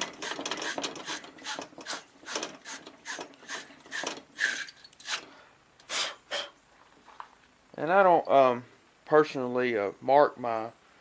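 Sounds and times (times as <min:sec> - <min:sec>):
wire brush scrubbing inside pipe: 0:00.0 - 0:05.2.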